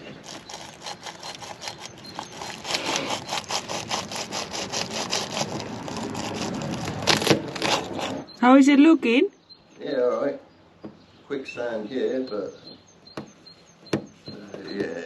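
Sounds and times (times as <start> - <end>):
hand sanding strokes: 0.0 - 8.2.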